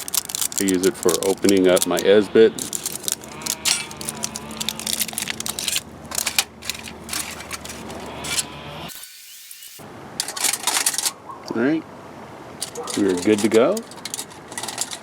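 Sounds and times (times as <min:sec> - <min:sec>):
foil pack crinkling and tearing: 0:00.0 - 0:08.4.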